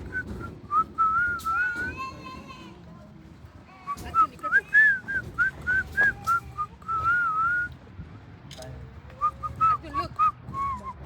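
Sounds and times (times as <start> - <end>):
person whistling: 9.2 - 11.0.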